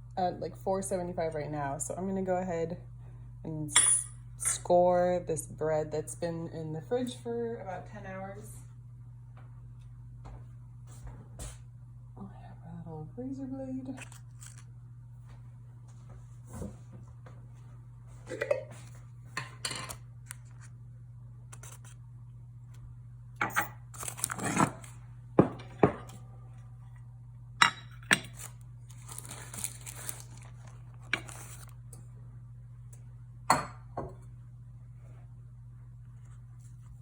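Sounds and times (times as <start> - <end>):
steady low hum: 0.0 - 37.0
wrapper crinkling: 14.0 - 14.7, 23.9 - 25.0, 28.3 - 31.8.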